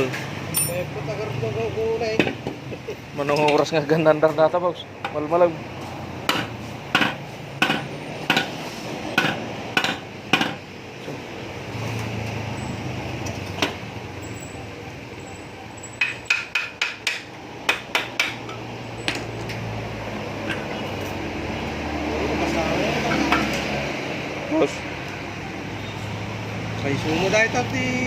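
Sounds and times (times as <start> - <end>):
hammer striking metal: 0.5 - 0.8, 6.3 - 8.6, 9.2 - 10.6, 15.9 - 19.2.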